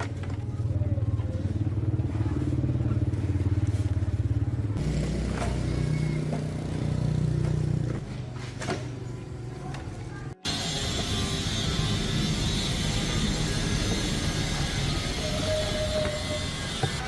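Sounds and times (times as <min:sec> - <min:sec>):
small engine pulsing: 0:10.4 - 0:17.0.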